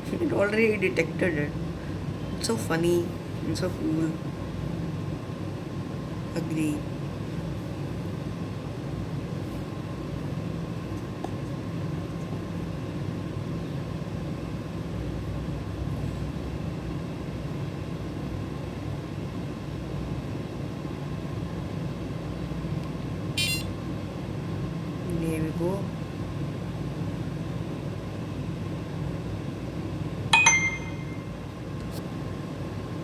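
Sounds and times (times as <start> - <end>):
low background hum: 0.0 - 33.0
faint high tone: 30.4 - 31.4.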